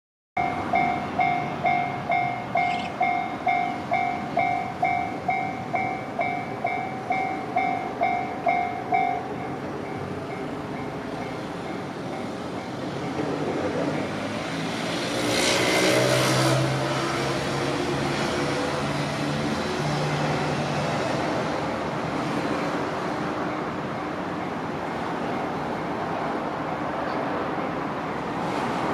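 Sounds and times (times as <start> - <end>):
vehicle passing: 13.2 - 23.2.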